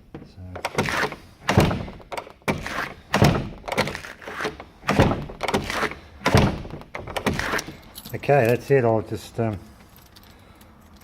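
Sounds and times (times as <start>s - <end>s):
door thudding shut: 0.1s - 4.0s, 4.8s - 7.8s
door latch clacking: 0.1s - 7.8s.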